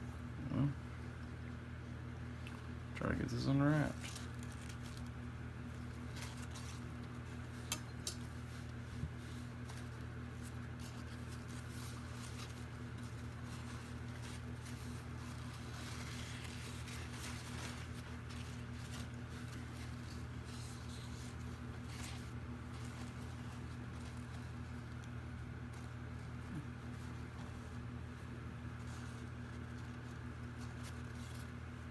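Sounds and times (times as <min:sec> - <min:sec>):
low electrical hum: 0:00.0 - 0:31.9.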